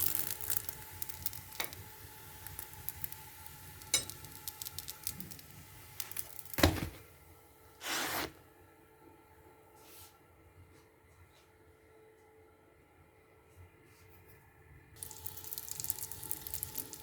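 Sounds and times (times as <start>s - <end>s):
crackling sizzle in a covered pot: 0.0s - 7.2s, 15.0s - 17.0s.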